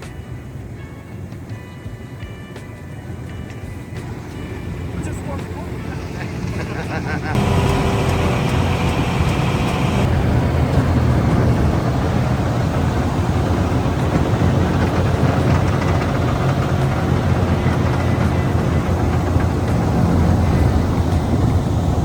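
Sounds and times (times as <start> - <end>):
wood chipper shredding straw: 6.7 - 22.0.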